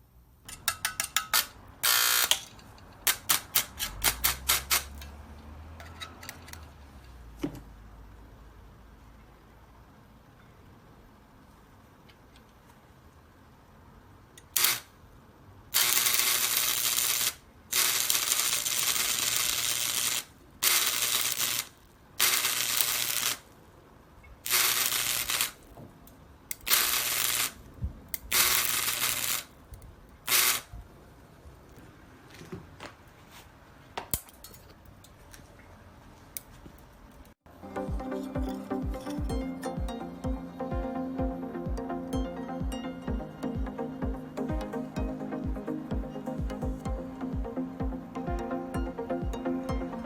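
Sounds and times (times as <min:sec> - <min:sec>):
welding arc crackling: 0:01.2 - 0:02.5, 0:03.1 - 0:05.0, 0:14.5 - 0:14.9, 0:15.8 - 0:23.5, 0:24.4 - 0:25.6, 0:26.5 - 0:27.6, 0:28.2 - 0:29.5, 0:30.3 - 0:30.7.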